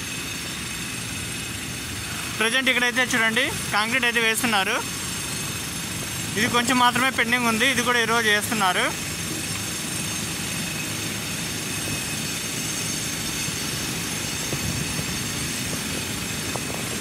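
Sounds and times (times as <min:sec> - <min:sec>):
concrete pump truck engine rumble: 0:00.0 - 0:17.0.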